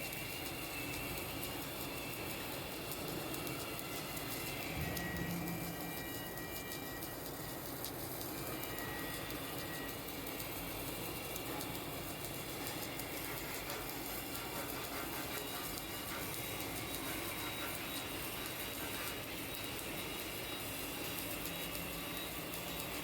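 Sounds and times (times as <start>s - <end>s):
welding machine hiss and rumble: 0.0s - 23.0s
faint hum: 4.6s - 7.3s.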